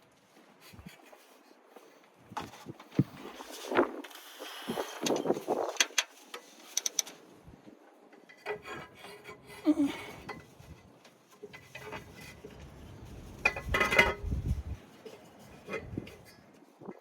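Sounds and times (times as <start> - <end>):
clatter of parts: 2.3 - 7.3, 8.1 - 17.0
hands fitting parts: 4.1 - 7.2, 8.2 - 16.6.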